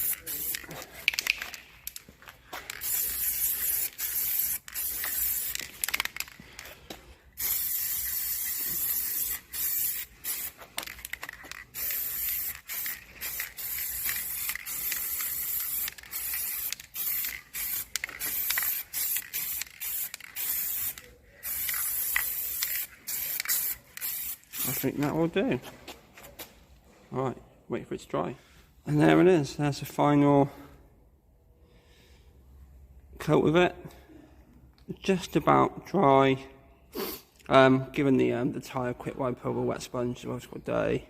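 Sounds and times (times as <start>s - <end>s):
spray-paint can hissing: 0.0s - 1.3s, 2.7s - 6.3s, 7.4s - 24.8s.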